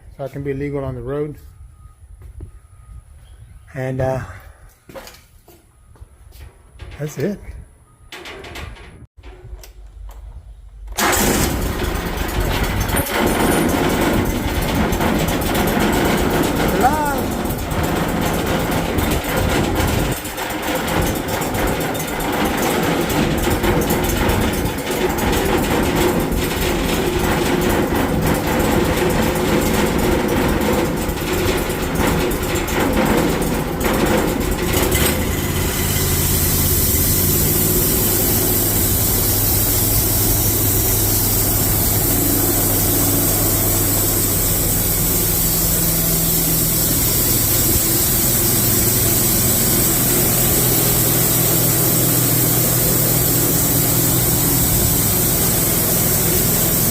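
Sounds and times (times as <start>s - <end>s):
engine running: 10.8s - 56.9s
high hiss: 35.6s - 56.9s.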